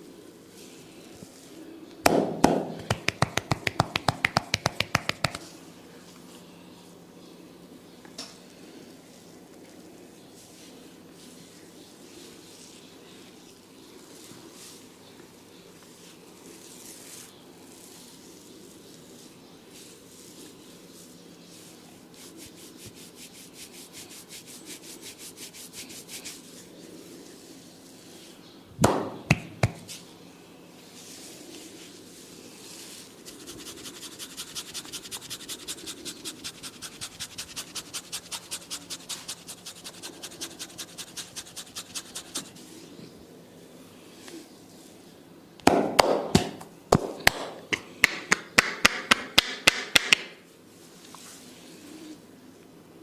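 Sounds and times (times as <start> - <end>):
rubbing and tapping on scalp: 2.0 - 5.5, 29.3 - 30.0, 33.2 - 42.6.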